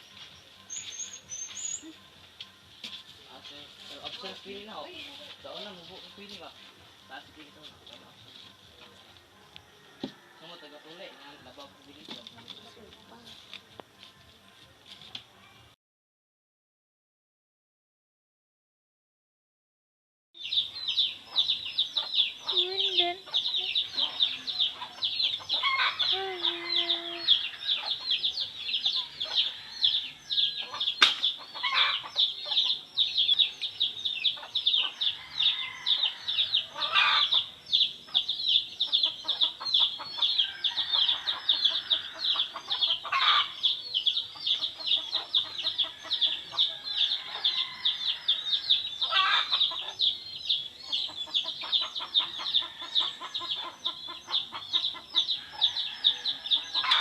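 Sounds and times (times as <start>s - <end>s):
chicks peeping: 20.4s - 57.0s.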